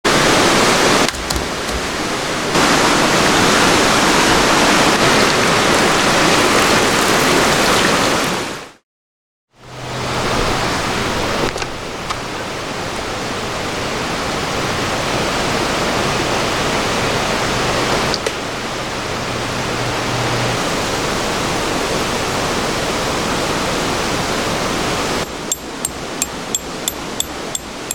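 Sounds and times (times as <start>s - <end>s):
river water rushing: 0.1s - 8.7s, 9.8s - 27.9s.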